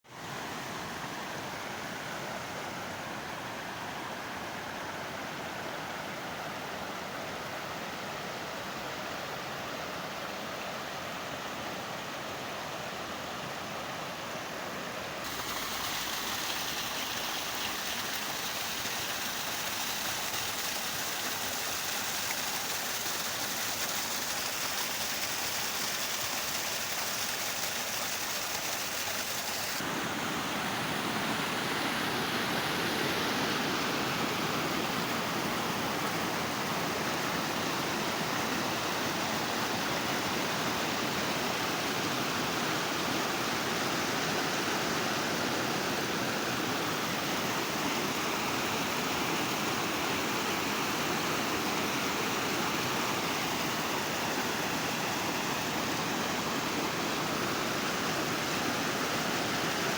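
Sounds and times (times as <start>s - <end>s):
waterfall rushing: 15.2s - 42.6s.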